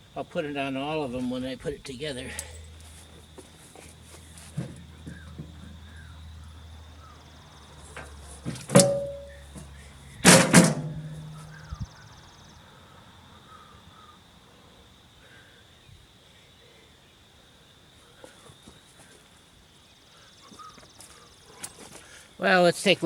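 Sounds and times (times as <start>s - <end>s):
metal parts clanking: 8.0s - 11.8s.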